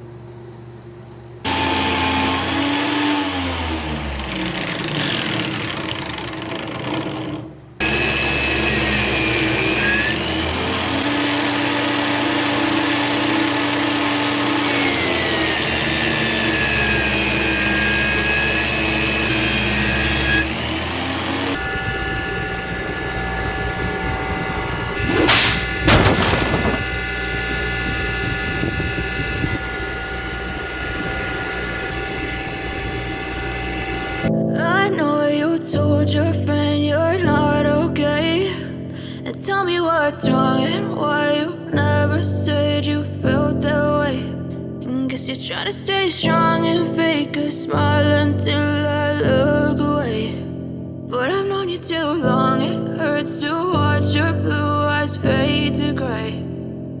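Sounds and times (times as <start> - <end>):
power tool motor chiselling: 1.5 - 34.3.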